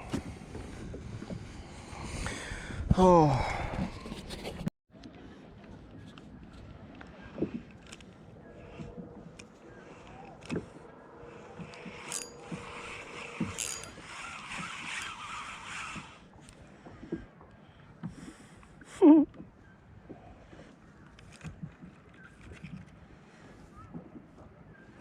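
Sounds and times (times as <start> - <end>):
knocks and rattles on kayak: 19.2 - 24.6.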